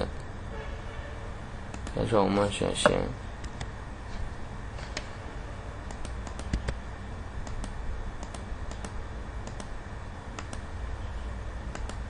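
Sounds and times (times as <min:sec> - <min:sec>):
low steady hum: 0:00.0 - 0:12.0
computer clicks: 0:01.7 - 0:02.0, 0:05.8 - 0:06.8, 0:07.4 - 0:10.7, 0:11.6 - 0:12.0.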